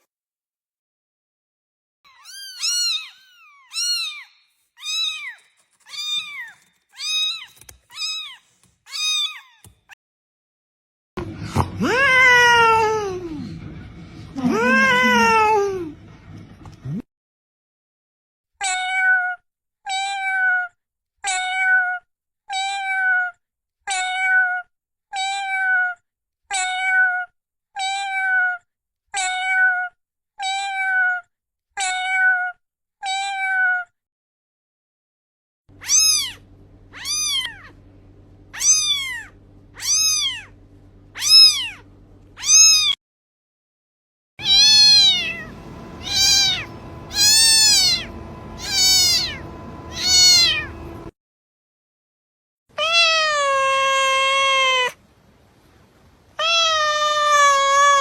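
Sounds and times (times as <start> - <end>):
cat meowing: 2.1 - 9.6, 11.8 - 13.4, 14.4 - 15.8, 35.8 - 37.8, 38.6 - 40.5, 41.2 - 41.8, 42.4 - 43.0, 44.4 - 51.1, 52.8 - 55.0, 56.4 - 58.0
low hum: 11.2 - 17.0, 35.7 - 42.4, 44.4 - 51.1.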